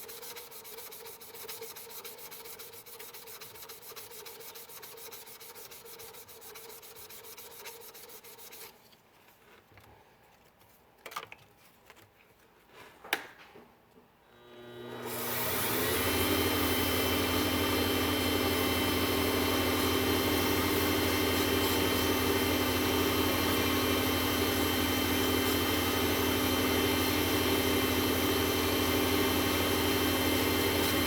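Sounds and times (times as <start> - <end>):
sandpaper rasping on spinning lathe: 0.0 - 8.8, 15.4 - 31.0
lathe hum: 14.4 - 31.0.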